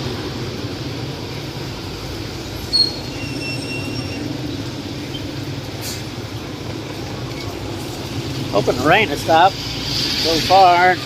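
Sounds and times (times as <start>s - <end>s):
rain hissing: 0.0s - 11.0s
traffic rumble: 0.0s - 11.0s
short high squeal: 2.7s - 4.4s.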